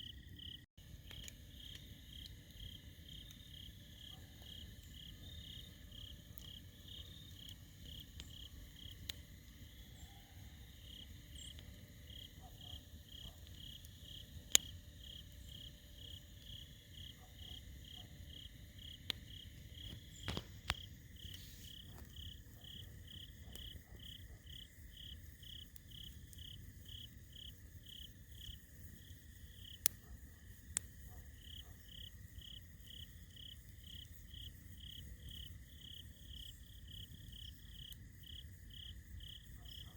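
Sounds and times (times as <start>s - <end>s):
crickets chirping: 0.0s - 39.9s
high insect trill: 0.0s - 39.9s
campfire crackling pops: 0.9s - 3.5s, 6.0s - 9.7s, 13.0s - 15.2s, 18.8s - 39.0s.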